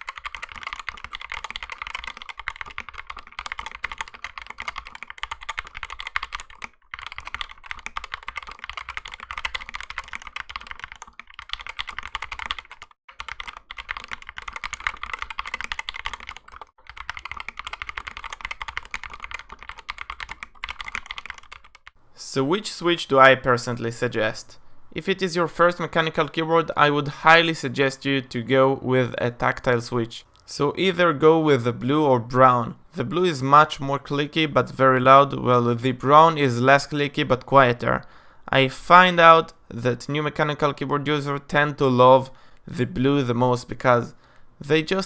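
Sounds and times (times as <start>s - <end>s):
mechanical keyboard typing: 0.0s - 22.0s.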